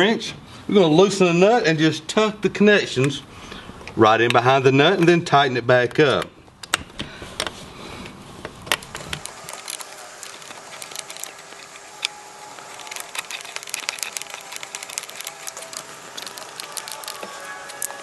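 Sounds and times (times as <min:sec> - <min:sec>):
handling noise: 0:05.9 - 0:18.0.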